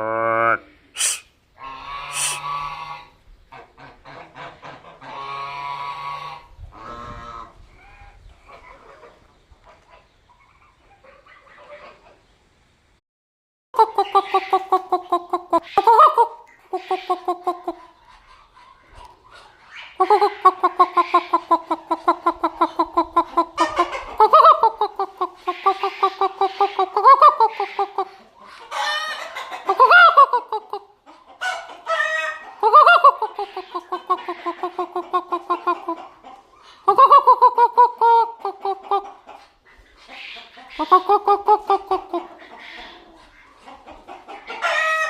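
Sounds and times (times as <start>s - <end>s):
person imitating duck quacking: 0.0s - 2.9s, 13.8s - 17.9s, 20.0s - 28.2s, 32.6s - 36.0s, 36.9s - 39.1s, 40.8s - 42.3s
person imitating chicken clucking: 0.0s - 3.1s, 13.8s - 18.2s, 19.9s - 39.5s, 40.5s - 45.0s
squawks: 0.4s - 1.3s, 2.0s - 2.6s.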